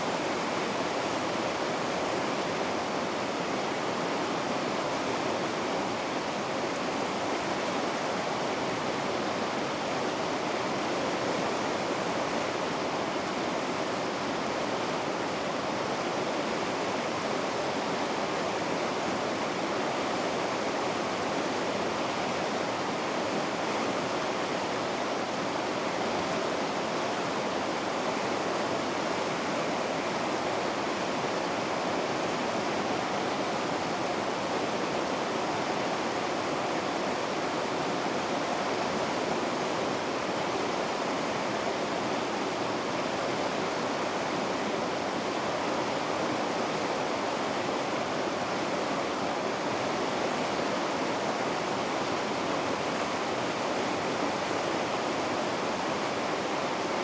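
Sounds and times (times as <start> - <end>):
river rapids rushing: 0.0 - 57.0.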